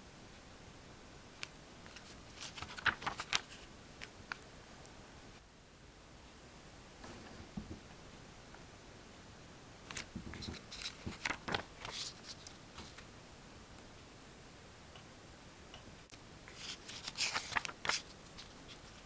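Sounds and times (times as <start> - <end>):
clicks and rustles of packaging: 1.9 - 3.7, 9.9 - 13.1, 16.5 - 19.0.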